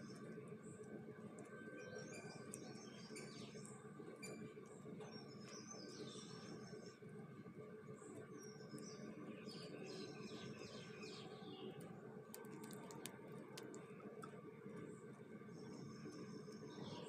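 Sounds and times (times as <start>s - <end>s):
small birds chirping: 0.0s - 7.1s, 7.9s - 17.0s
low background noise: 0.0s - 17.0s
sharp clicks: 11.8s - 13.9s.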